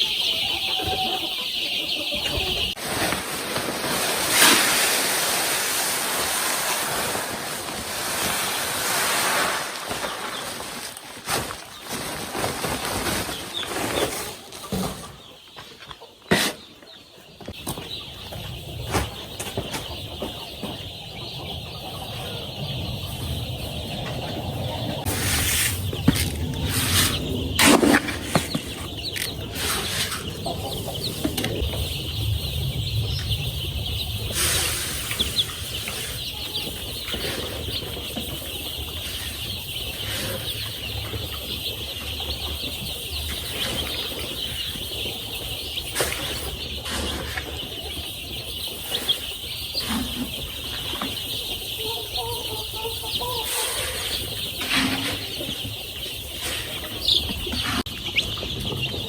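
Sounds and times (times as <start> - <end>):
chicks peeping: 0.0 - 59.0
knocks and rustles: 25.0 - 30.5.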